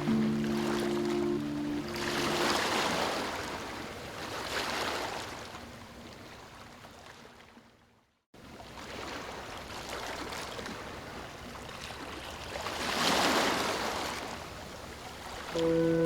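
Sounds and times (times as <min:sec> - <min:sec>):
sustained musical notes: 0:00.0 - 0:03.2, 0:15.6 - 0:16.0
ocean waves washing in: 0:00.0 - 0:05.3, 0:15.5 - 0:16.0.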